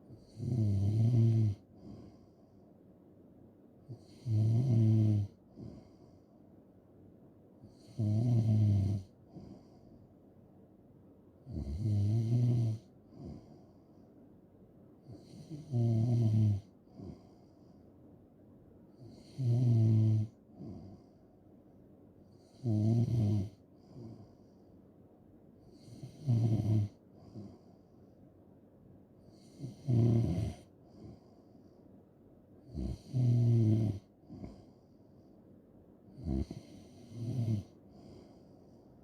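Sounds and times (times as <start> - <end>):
person snoring: 0.2 - 2.2, 3.9 - 6.0, 7.7 - 9.7, 11.5 - 13.5, 15.1 - 17.3, 19.0 - 21.0, 22.4 - 24.2, 25.8 - 27.5, 29.3 - 31.2, 32.7 - 34.7, 36.2 - 38.4.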